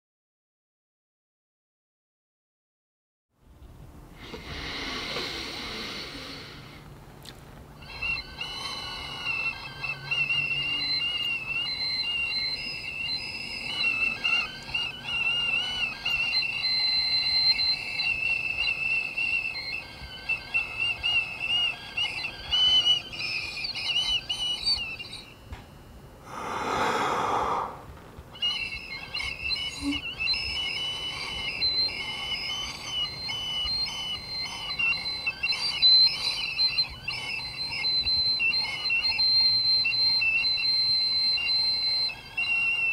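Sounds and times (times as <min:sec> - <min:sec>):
man making shrill throat whistle: 0:26.3 - 0:27.8, 0:28.4 - 0:42.9.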